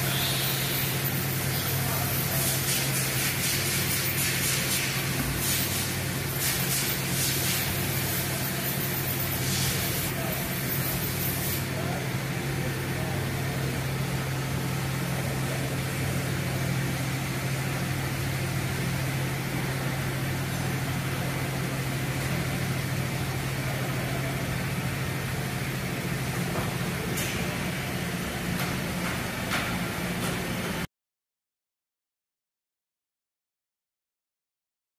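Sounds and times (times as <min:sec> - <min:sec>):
machine shop equipment humming: 0:00.0 - 0:30.9
hissing bursts: 0:02.3 - 0:10.2.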